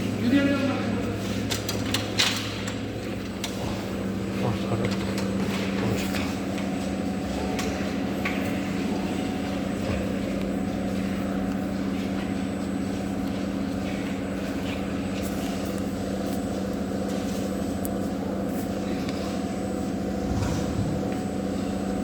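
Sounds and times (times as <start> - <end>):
machinery humming: 15.8 - 22.0.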